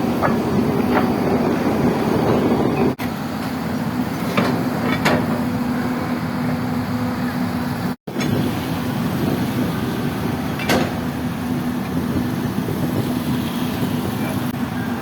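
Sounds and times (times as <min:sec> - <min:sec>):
machine knocks and clanks: 0:00.0 - 0:03.6, 0:04.2 - 0:05.5, 0:10.6 - 0:11.0
excavator diesel engine droning: 0:00.0 - 0:15.0.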